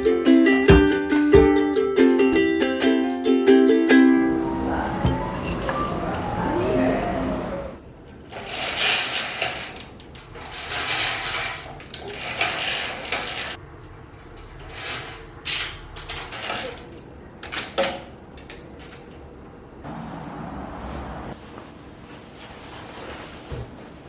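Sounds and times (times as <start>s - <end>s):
dishes clicking and knocking: 5.0s - 6.4s
scraping and rustling: 8.3s - 13.6s, 19.9s - 24.0s.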